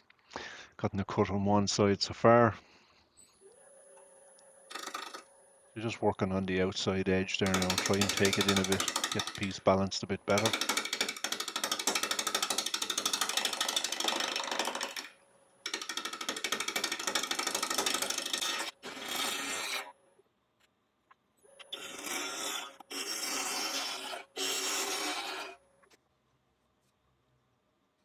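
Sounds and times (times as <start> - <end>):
gouge chattering on spinning wood: 4.7 - 5.2, 7.4 - 15.1, 15.7 - 19.8, 21.7 - 25.6.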